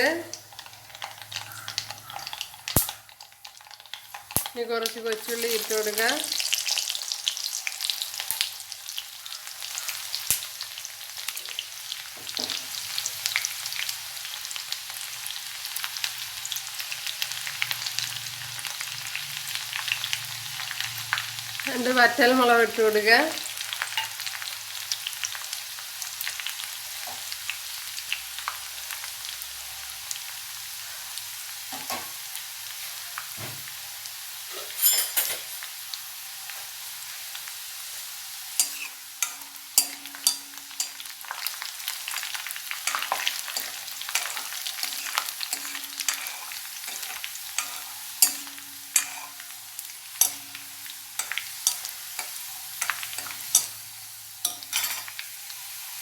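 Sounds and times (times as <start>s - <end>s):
food sizzling in hot oil: 0.0s - 56.0s.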